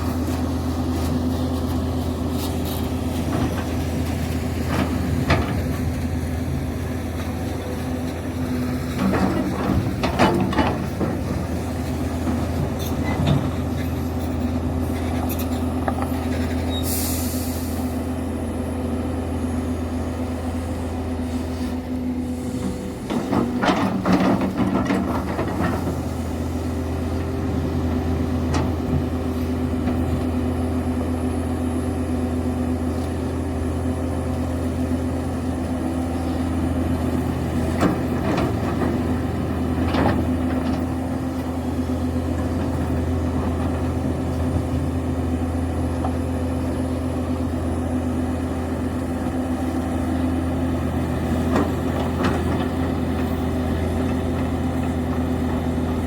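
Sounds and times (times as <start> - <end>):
diesel engine running: 0.0 - 56.0
short hiss: 16.8 - 18.0.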